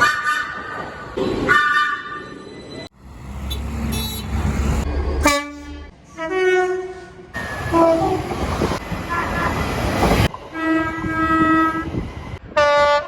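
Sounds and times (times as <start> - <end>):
train horn: 5.2 - 8.4, 10.5 - 11.9, 12.5 - 13.0
two-tone train horn: 5.2 - 8.4, 10.5 - 13.0.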